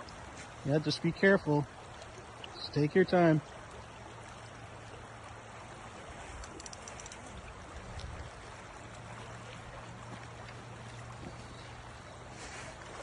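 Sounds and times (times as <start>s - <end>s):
river water flowing: 0.0s - 13.0s
faint ticks: 6.3s - 8.2s.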